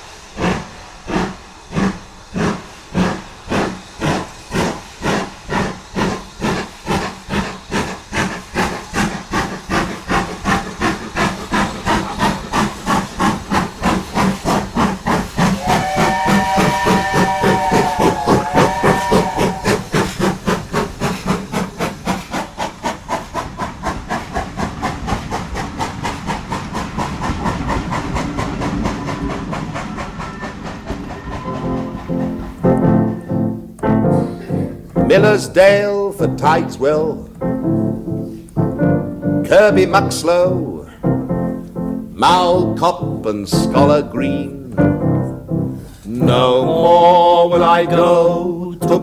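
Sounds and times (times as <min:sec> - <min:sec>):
steam locomotive exhaust beats: 0:00.0 - 0:49.0
steam whistle: 0:15.5 - 0:20.0, 0:31.2 - 0:35.2, 0:44.8 - 0:49.0.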